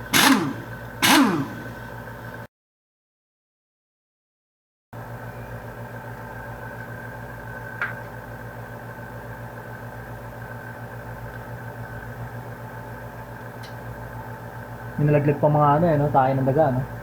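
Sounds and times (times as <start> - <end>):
machine hum with low throb: 0.0 - 2.5.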